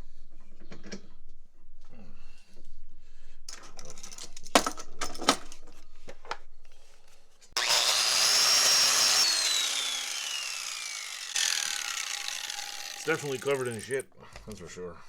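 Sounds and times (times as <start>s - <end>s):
power tool whining: 7.6s - 14.0s.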